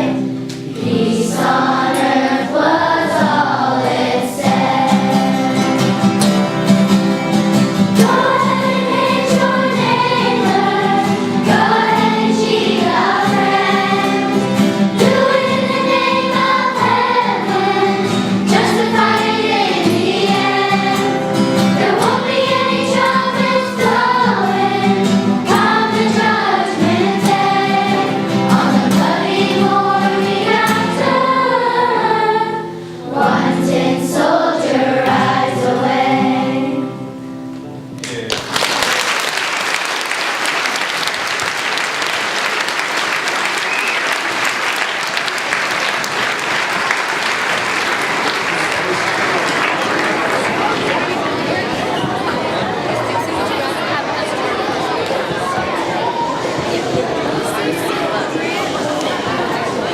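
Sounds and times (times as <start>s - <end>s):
choir singing: 0.0s - 37.2s.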